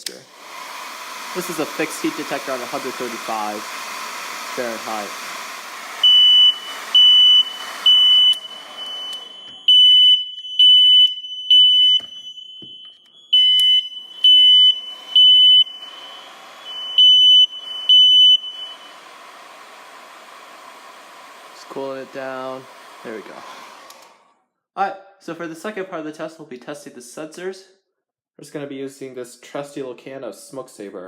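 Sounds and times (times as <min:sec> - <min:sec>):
hair dryer blowing: 0:00.0 - 0:09.8, 0:13.7 - 0:24.4
high-pitched alarm beeps: 0:06.0 - 0:19.0.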